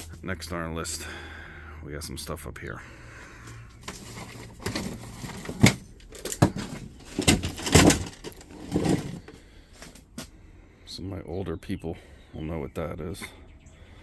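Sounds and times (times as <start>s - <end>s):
items knocking bumping and scraping: 3.7s - 10.0s.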